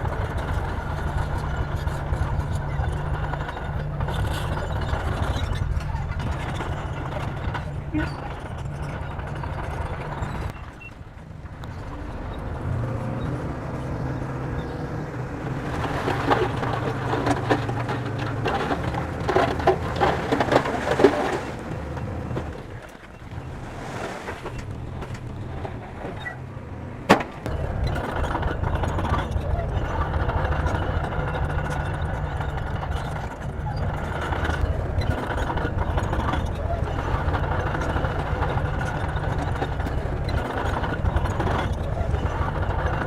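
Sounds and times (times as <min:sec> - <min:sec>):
bulldozer diesel engine under load: 0:00.0 - 0:43.0
clattering: 0:15.4 - 0:43.0.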